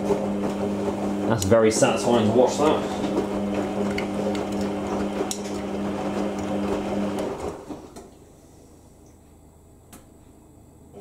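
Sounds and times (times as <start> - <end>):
washing machine drum turning: 0.0 - 8.0.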